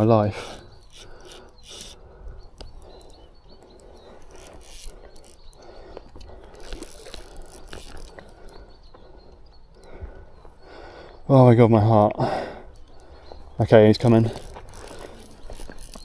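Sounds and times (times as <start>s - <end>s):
fly reel ratchet clicking: 0.8s - 2.0s, 4.2s - 8.2s, 14.0s - 16.0s.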